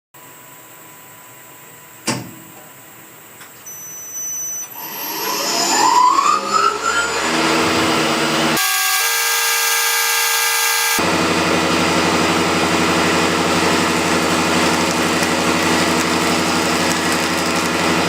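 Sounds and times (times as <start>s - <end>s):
motor whine spinning up: 3.7s - 11.0s.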